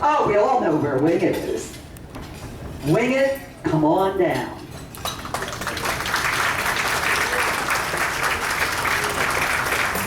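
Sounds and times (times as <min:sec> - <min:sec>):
audience applauding: 0:05.0 - 0:10.0.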